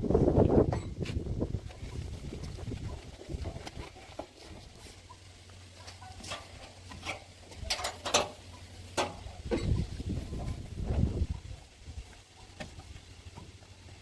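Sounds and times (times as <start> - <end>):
sharp clicks and knocks: 6.2 - 8.4.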